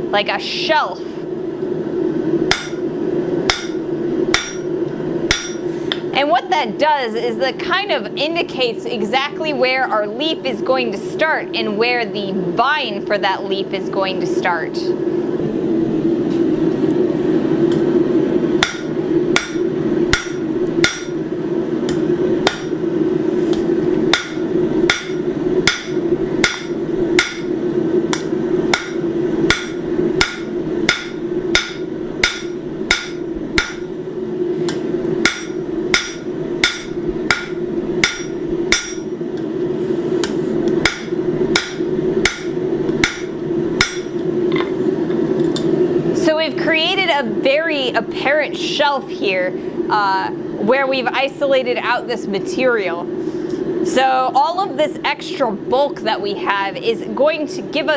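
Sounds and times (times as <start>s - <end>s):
steady low hum: 0.0s - 57.9s
hammer striking steel on anvil: 2.5s - 2.8s, 3.5s - 4.7s, 5.3s - 6.0s, 18.6s - 21.2s, 21.9s - 22.8s, 24.1s - 33.9s, 34.7s - 39.1s, 40.2s - 44.2s.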